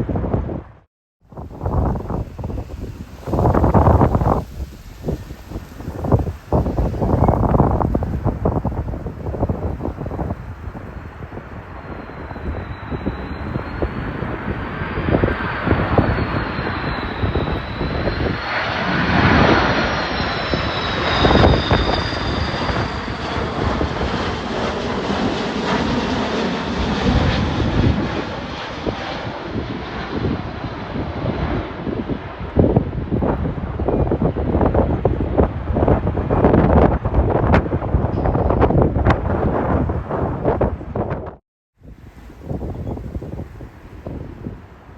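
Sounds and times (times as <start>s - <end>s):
wind buffeting microphone: 0.0s - 44.9s
high fan whine: 1.3s - 24.0s, 41.8s - 44.9s
jet engine roar: 1.4s - 44.9s.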